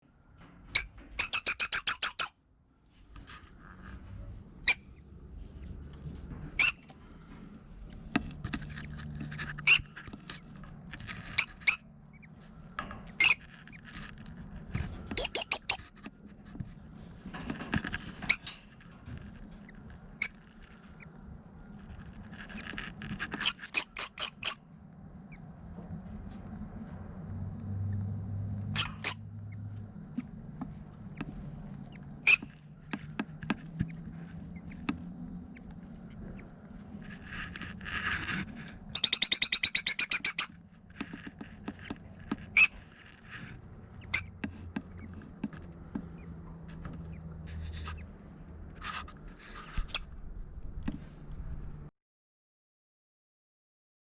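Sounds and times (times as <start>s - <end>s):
lovebirds shrill chirping: 0.8s - 2.3s, 9.6s - 9.8s, 11.4s - 12.3s, 15.2s - 15.8s, 23.4s - 24.6s, 28.8s - 29.2s, 32.3s - 32.5s, 39.0s - 40.5s.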